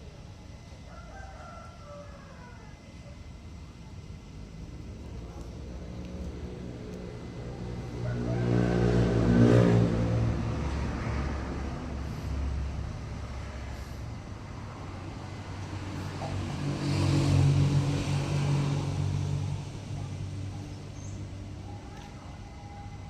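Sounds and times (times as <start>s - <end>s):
vehicle engine passing by: 5.2s - 22.8s.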